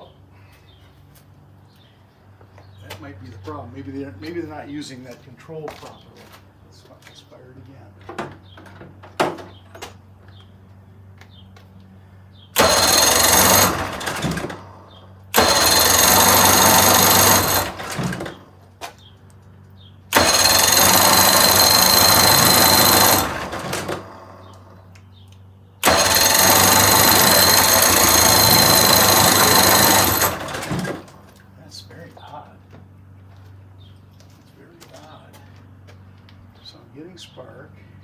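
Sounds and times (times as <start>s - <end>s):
outboard motor starter cranking: 12.5s - 18.6s, 20.1s - 24.9s, 25.8s - 31.5s.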